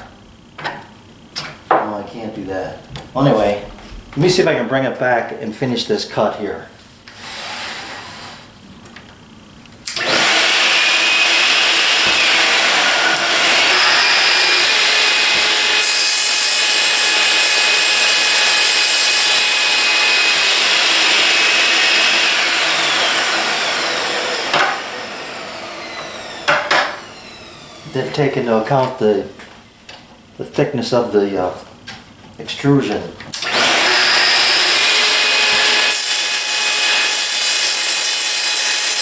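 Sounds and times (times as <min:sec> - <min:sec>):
track saw whining: 0:09.9 - 0:28.6, 0:33.4 - 0:39.0.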